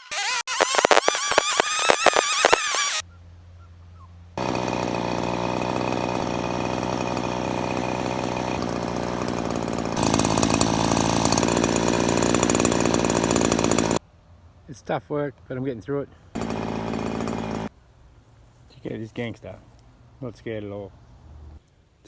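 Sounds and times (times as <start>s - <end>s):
brush cutter running: 0.0s - 3.0s, 4.4s - 14.0s, 16.4s - 17.7s.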